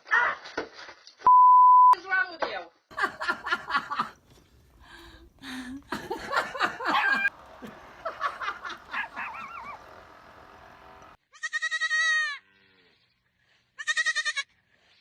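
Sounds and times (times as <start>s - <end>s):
people laughing: 2.9s - 10.2s.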